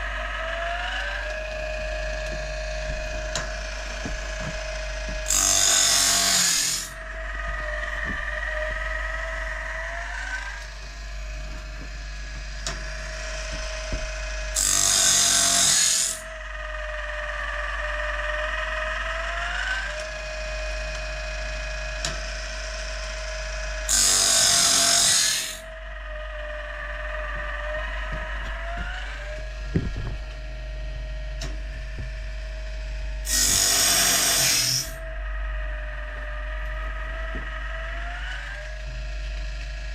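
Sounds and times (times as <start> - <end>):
sawmill machinery whining: 0.0 - 39.9.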